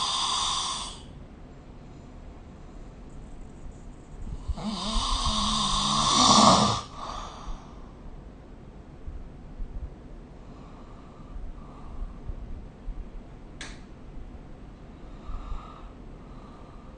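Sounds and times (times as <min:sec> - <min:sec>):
person snoring: 0:00.0 - 0:01.0, 0:04.4 - 0:07.5
soft breathing: 0:01.8 - 0:08.1, 0:10.4 - 0:12.5, 0:14.9 - 0:16.9.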